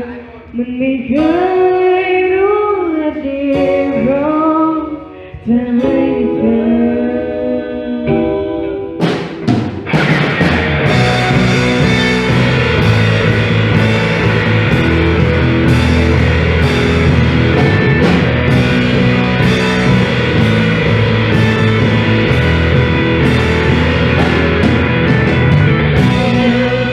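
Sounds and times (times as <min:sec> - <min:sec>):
bass guitar: 0:00.0 - 0:26.9
electric guitar: 0:01.2 - 0:26.9
drum kit with cymbal crashes: 0:09.0 - 0:26.9.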